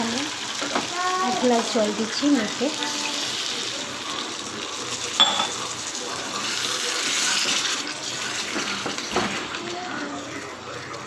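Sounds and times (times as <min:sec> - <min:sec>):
water sizzling in hot pan: 0:00.0 - 0:11.0
spoon clinking against pan: 0:05.2 - 0:05.7.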